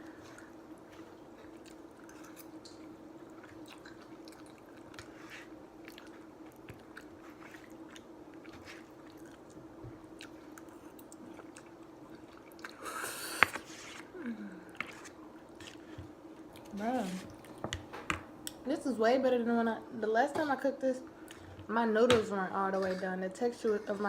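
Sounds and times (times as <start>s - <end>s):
steady low hum: 0.0s - 24.0s
chewing and wet mouth clicks: 1.6s - 5.1s.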